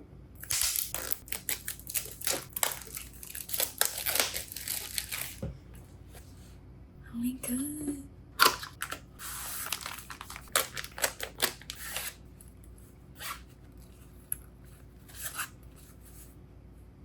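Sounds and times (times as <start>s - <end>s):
packaging tearing: 0.4s - 5.4s, 8.4s - 12.2s
packaging clicks and rustles: 0.8s - 5.4s, 8.4s - 12.2s.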